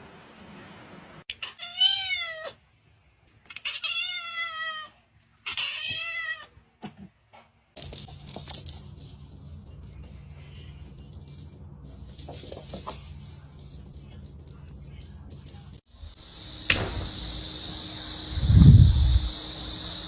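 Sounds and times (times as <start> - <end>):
cat meowing: 1.3 - 2.6, 3.5 - 6.5
steady background hiss: 14.8 - 20.0.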